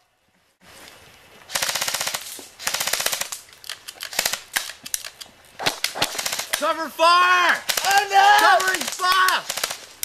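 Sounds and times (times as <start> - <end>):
airsoft guns firing rapid bursts: 1.5 - 3.4, 4.1 - 4.8, 5.6 - 6.8, 7.6 - 10.0.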